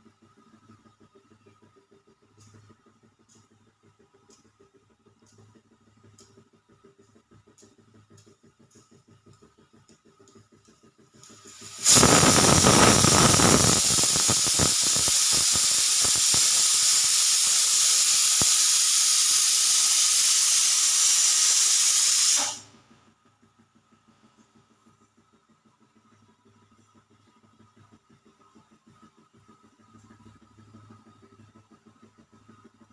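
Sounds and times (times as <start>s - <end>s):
pressure cooker steam hiss: 11.3s - 22.8s.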